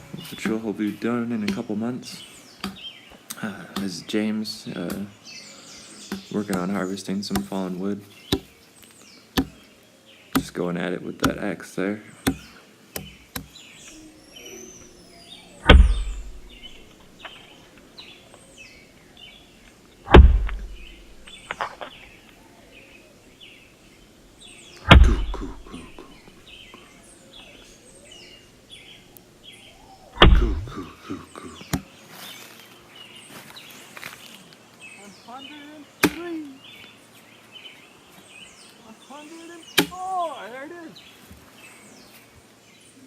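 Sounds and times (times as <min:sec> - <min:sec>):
birds chirping: 0:00.0 - 0:43.0
axe chopping wood: 0:02.6 - 0:02.8, 0:06.1 - 0:07.6, 0:08.3 - 0:08.5, 0:09.4 - 0:09.6, 0:10.4 - 0:10.6, 0:11.2 - 0:11.5, 0:12.2 - 0:13.6, 0:15.6 - 0:17.0, 0:20.1 - 0:21.8, 0:24.9 - 0:26.1, 0:30.2 - 0:30.7, 0:36.0 - 0:36.3, 0:39.8 - 0:40.0.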